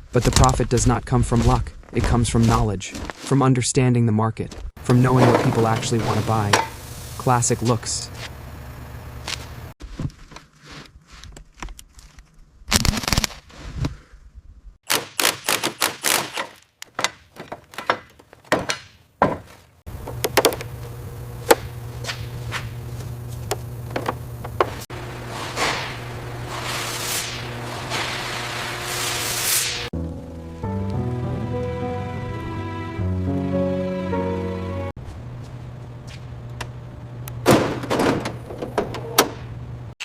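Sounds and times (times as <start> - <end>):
low machine hum: 4.8 - 9.7, 19.9 - 29.0, 35.0 - 39.9
hiss: 25.3 - 29.9.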